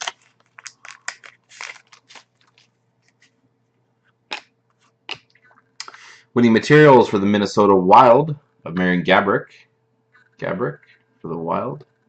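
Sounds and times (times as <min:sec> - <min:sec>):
cards rustling: 0:00.0 - 0:03.4
wrapper crinkling: 0:00.0 - 0:03.4.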